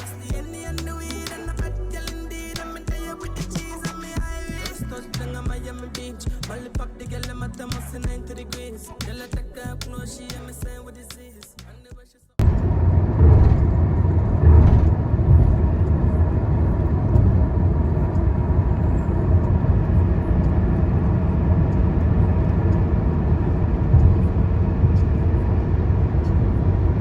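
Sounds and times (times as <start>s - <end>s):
car rumbling on road: 12.4s - 27.0s.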